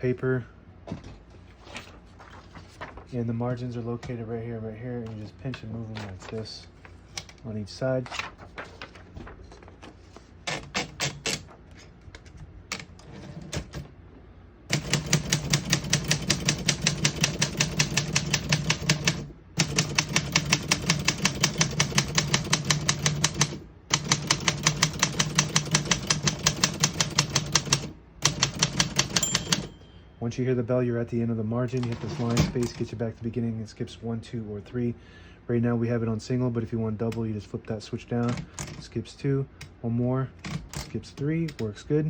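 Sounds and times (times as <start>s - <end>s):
manual typewriter typing: 10.4s - 11.6s, 14.7s - 29.7s, 31.8s - 32.9s, 38.2s - 38.9s, 40.4s - 41.7s.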